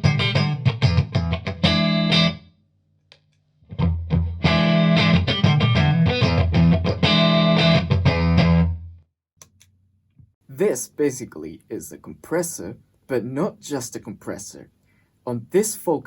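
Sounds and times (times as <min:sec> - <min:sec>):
lightly distorted electric guitar: 0:00.0 - 0:02.5, 0:03.6 - 0:08.9.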